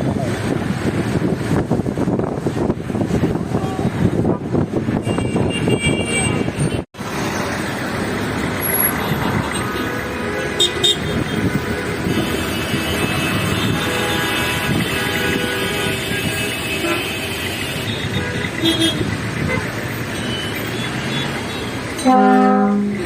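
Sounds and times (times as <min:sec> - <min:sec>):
road traffic: 0:00.0 - 0:23.0
car horns tooting: 0:05.0 - 0:06.9, 0:08.7 - 0:23.0.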